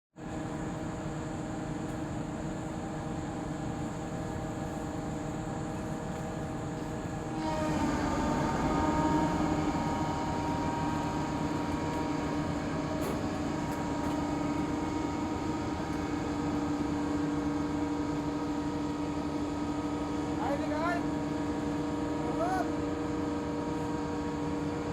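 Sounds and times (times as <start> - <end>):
crane diesel engine droning: 0.3 - 24.9.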